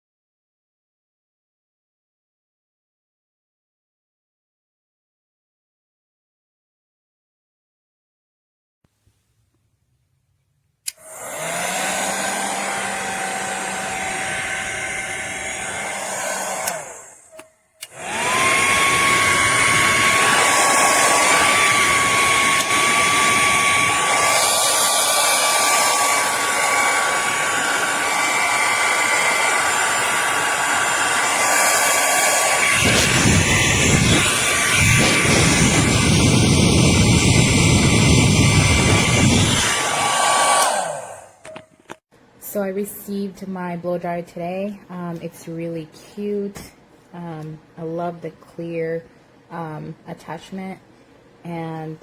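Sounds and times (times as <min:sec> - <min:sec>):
hair dryer blowing: 0:10.9 - 0:41.6.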